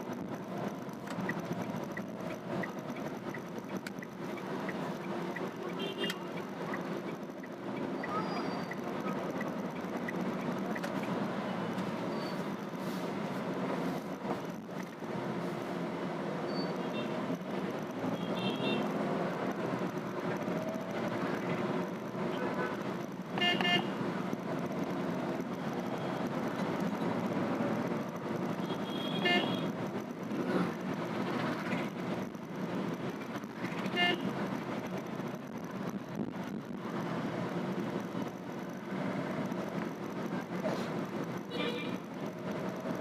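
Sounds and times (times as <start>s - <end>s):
car engine hum: 0.0s - 43.0s
road noise: 0.0s - 43.0s
car horn toots: 23.4s - 24.0s, 28.6s - 29.7s, 33.8s - 34.3s.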